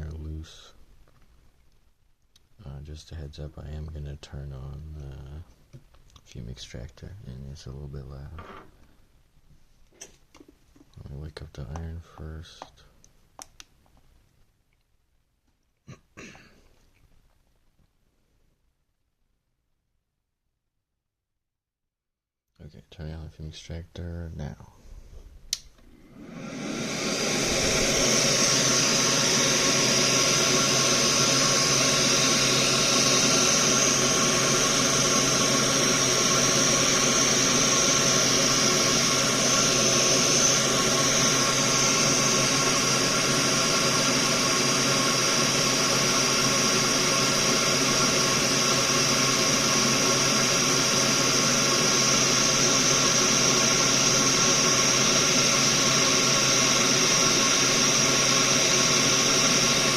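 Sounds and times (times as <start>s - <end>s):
extractor fan rushing air: 24.9s - 59.9s
fan motor hum: 25.5s - 59.9s.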